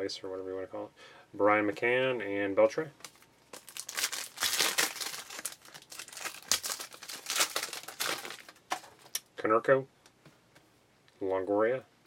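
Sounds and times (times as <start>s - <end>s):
plastic wrapper crinkling and tearing: 3.0s - 9.3s.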